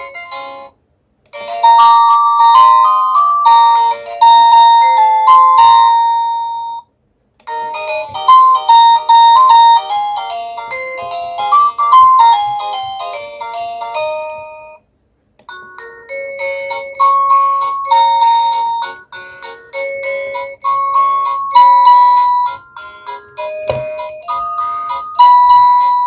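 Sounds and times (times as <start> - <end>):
doorbell ringtone melodies: 1.3 - 6.9, 7.5 - 14.8, 15.5 - 26.0.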